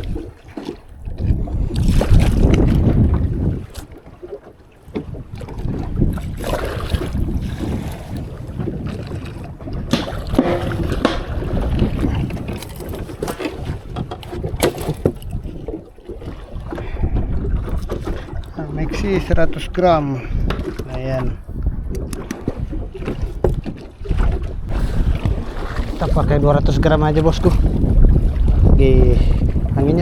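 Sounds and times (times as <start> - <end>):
water washing against boat hull: 0.0 - 30.0
wind buffeting microphone: 0.0 - 30.0
sharp knocks and clicks: 9.8 - 15.3.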